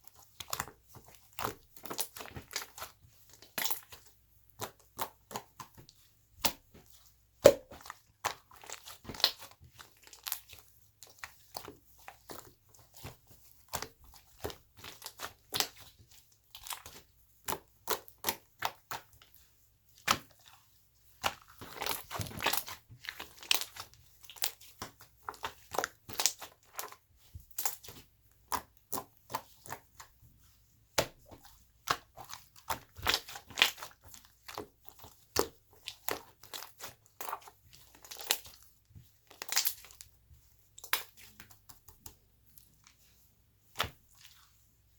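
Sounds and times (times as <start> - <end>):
slime popping and crackling: 7.4 - 10.4, 39.4 - 40.0.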